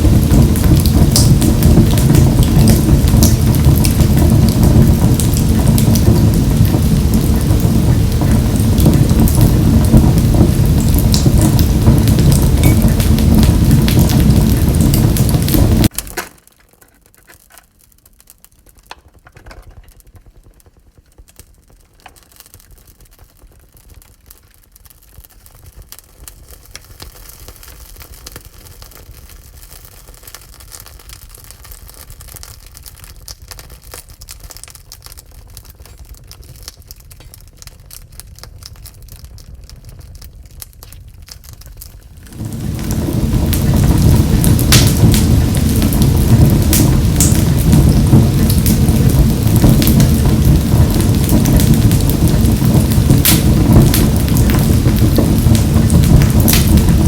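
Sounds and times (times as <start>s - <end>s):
loud rain-like rushing noise: 0.0s - 16.0s, 42.1s - 57.0s
wood fire crackling: 0.0s - 57.0s.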